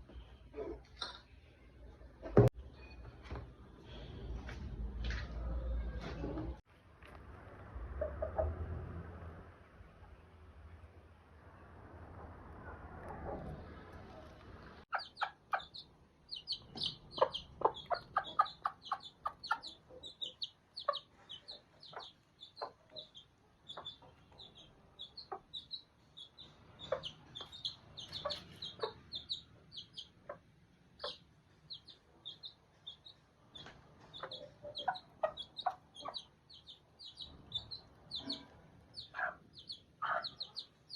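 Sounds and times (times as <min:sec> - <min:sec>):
chickens clucking: 0:07.9 - 0:08.9, 0:13.1 - 0:40.9
high chick peeps: 0:12.6 - 0:40.9.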